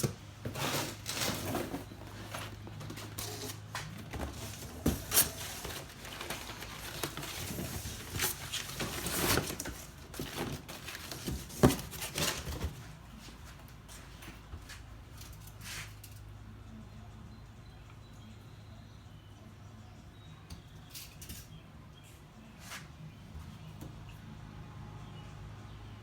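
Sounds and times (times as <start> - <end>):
rustling of wiring being handled: 0.0 - 16.3.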